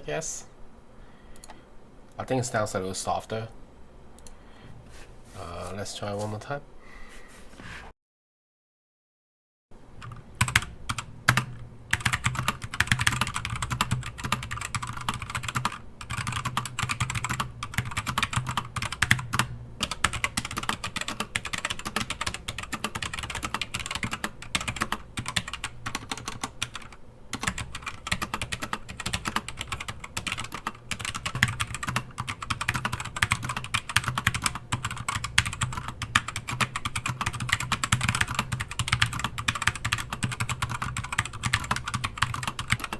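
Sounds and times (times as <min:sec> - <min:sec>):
mechanical keyboard typing: 0:10.0 - 0:42.9.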